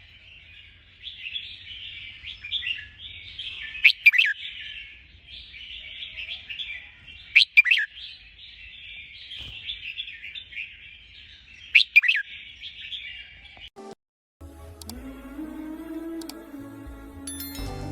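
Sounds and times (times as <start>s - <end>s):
birds chattering: 0.0s - 13.7s.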